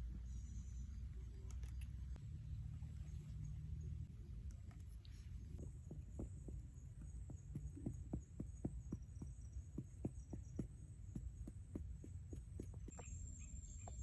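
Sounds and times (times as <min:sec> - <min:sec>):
faint chirping: 0:00.0 - 0:14.0.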